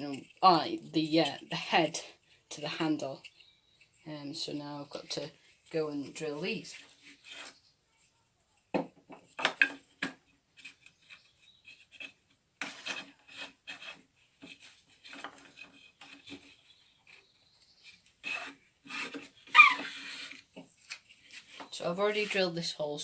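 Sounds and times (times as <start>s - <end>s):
hand drill rasping through wood: 6.1s - 7.7s, 10.6s - 22.8s.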